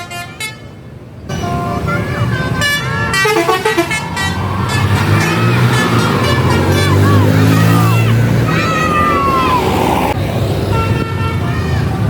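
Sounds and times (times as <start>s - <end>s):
musical bus horn tune: 0.0s - 7.3s, 10.6s - 11.5s
bus engine low hum: 0.0s - 12.0s
voices shouting: 1.3s - 10.2s, 10.8s - 12.0s.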